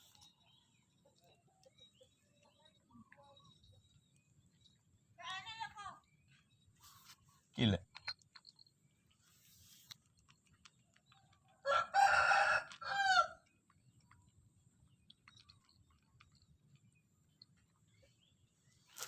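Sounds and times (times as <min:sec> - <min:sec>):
rooster crowing: 0:11.6 - 0:13.4.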